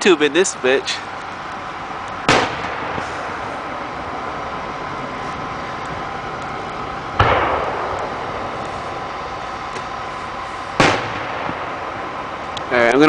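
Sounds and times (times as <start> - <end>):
steady hum with faint tones: 0.0 - 13.0
firework boom with echo: 2.2 - 3.6, 7.2 - 9.7, 10.8 - 12.3.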